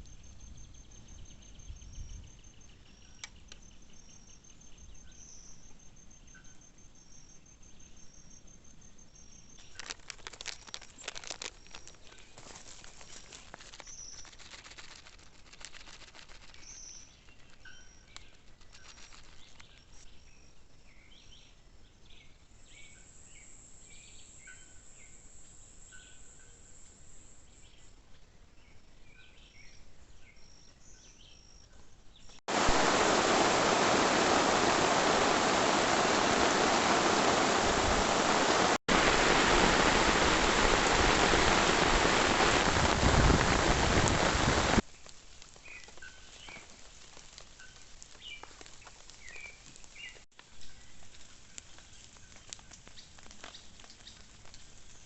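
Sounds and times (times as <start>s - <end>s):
steady high whine: 32.5s - 43.0s.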